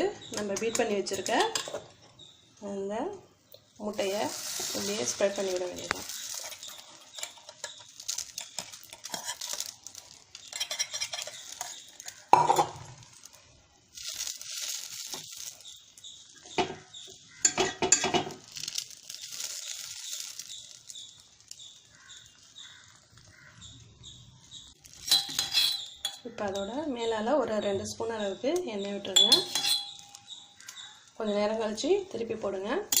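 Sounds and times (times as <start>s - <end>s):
egg sizzling in hot oil: 3.4s - 26.4s, 29.1s - 31.9s
spatula scraping metal pan: 4.3s - 12.2s, 25.0s - 26.2s, 29.1s - 30.8s.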